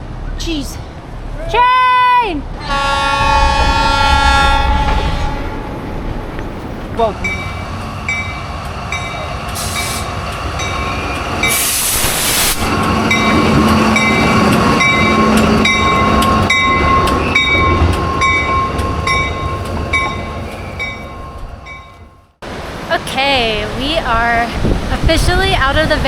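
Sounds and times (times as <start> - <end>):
train rumbling: 0.0 - 26.0
steady high whine: 2.6 - 22.4
bell clanging: 5.0 - 11.6, 12.7 - 22.3
loud hiss: 11.4 - 12.8.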